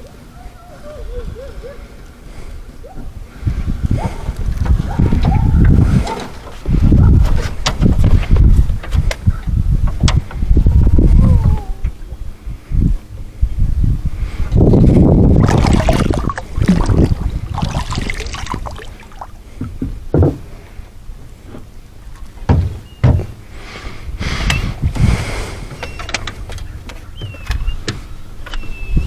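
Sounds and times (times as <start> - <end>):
rushes of noise: 14.5 - 19.4
knocks and thumps in boat: 19.6 - 20.5, 22.4 - 23.4.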